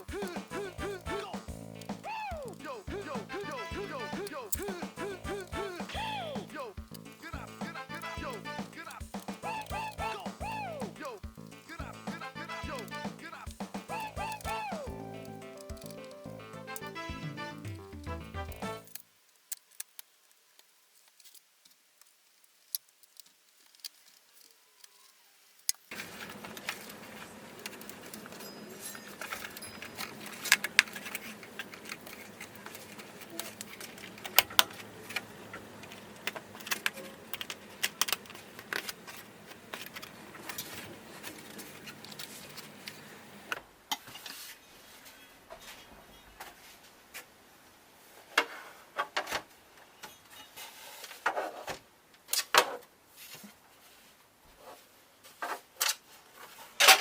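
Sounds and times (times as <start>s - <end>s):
small hard parts clicking: 0.0s - 43.6s
background hiss: 0.0s - 57.0s.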